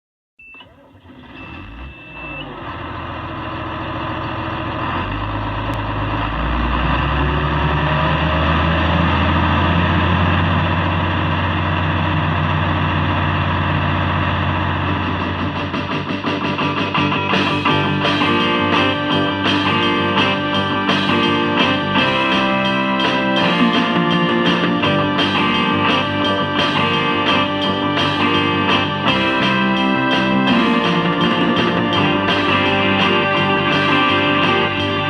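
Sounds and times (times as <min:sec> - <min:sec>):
short steady beep: 0:00.4 - 0:00.7, 0:01.4 - 0:02.5
heavy diesel engine revving: 0:01.0 - 0:16.2.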